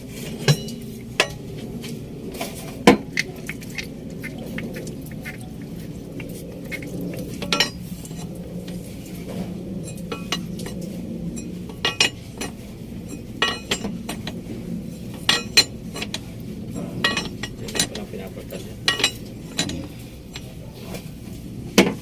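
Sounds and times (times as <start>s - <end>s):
steady low hum: 0.0s - 22.0s
metal tools clinking: 17.0s - 20.5s.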